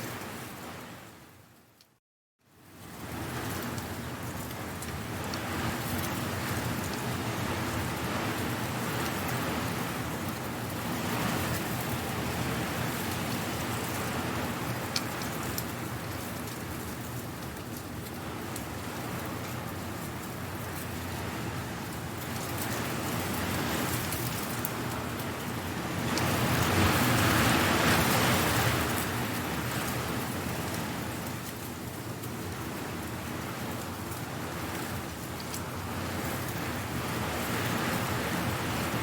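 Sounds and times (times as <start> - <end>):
dry leaves rustling in wind: 2.6 - 39.0.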